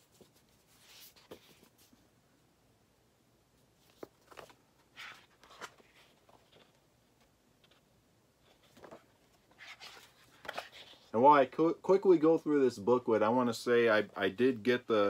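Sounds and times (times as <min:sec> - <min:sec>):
paper pages rustling: 0:00.0 - 0:02.0, 0:03.8 - 0:11.1.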